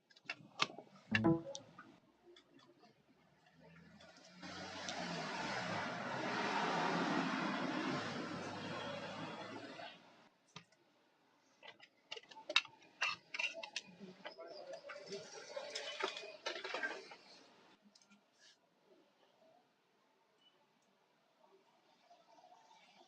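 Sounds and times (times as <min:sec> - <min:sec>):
sharp clicks and taps: 0:00.2 - 0:01.6.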